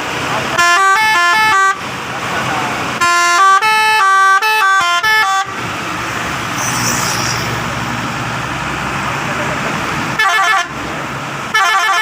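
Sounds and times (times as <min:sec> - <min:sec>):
truck air horn tune: 0:00.5 - 0:01.8, 0:03.0 - 0:05.6, 0:10.2 - 0:10.8, 0:11.5 - 0:12.0.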